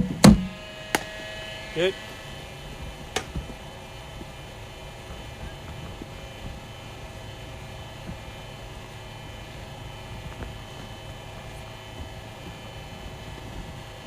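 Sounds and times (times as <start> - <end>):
dull thud: 0.0 - 1.1
bowling machine humming: 0.0 - 14.0.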